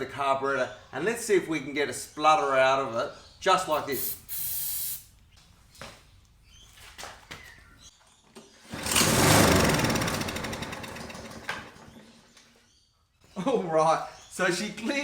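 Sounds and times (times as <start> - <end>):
lawn mower engine starting and dying: 8.6 - 12.6.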